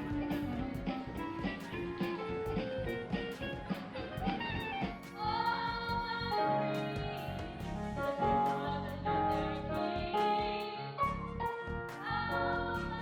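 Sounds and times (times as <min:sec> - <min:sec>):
instrumental backing: 0:00.0 - 0:13.0
person singing: 0:05.1 - 0:13.0.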